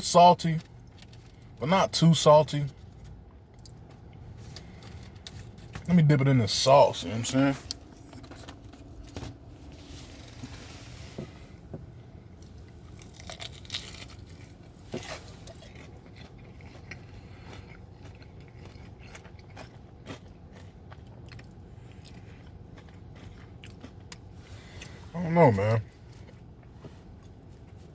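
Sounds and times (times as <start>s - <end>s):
person chewing crispy chicken: 2.8s - 6.0s, 12.4s - 25.0s.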